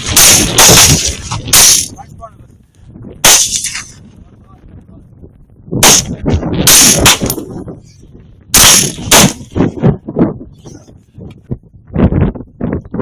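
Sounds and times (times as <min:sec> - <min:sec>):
rifle shots: 0:00.0 - 0:02.0, 0:03.2 - 0:03.9, 0:05.8 - 0:07.5, 0:08.6 - 0:09.6
weaker cracks: 0:00.0 - 0:02.0, 0:03.2 - 0:04.0.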